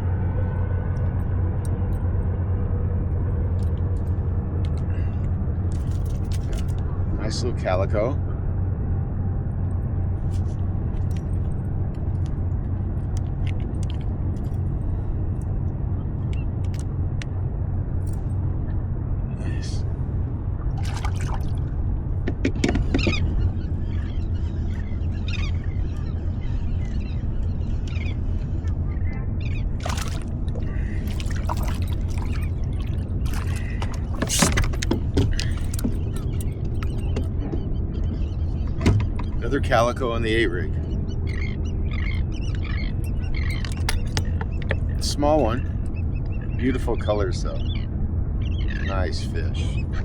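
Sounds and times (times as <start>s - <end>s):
boat motor humming: 0.0s - 50.0s
steady low rumble: 0.0s - 50.0s
water splashing and sloshing: 3.1s - 7.7s, 9.6s - 18.8s, 19.9s - 40.0s, 40.8s - 46.0s
light clicks and rattles: 5.7s - 6.9s, 16.2s - 17.4s, 31.1s - 39.9s, 42.5s - 45.1s.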